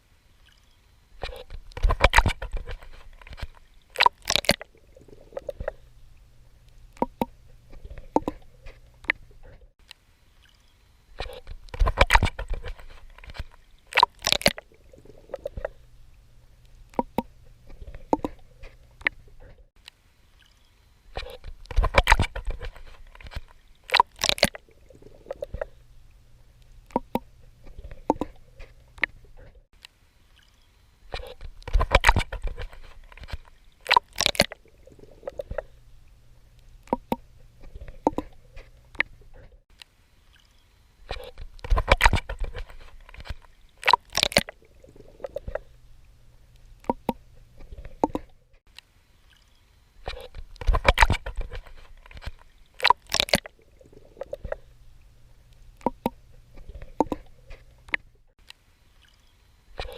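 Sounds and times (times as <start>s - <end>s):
water splashing and sloshing: 0.0s - 59.9s
small clicks and gurgles: 0.4s - 59.9s.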